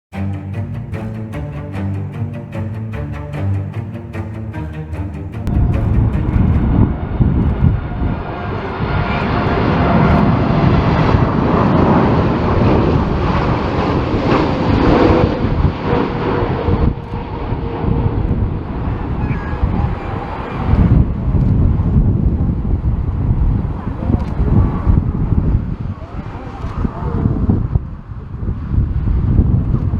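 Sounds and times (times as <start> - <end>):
jet engines passing: 5.4 - 20.8
wind rumbling on microphone: 5.5 - 29.9.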